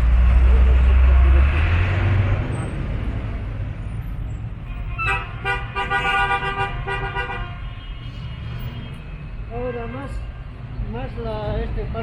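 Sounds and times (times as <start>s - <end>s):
street traffic rumble: 0.0s - 12.0s.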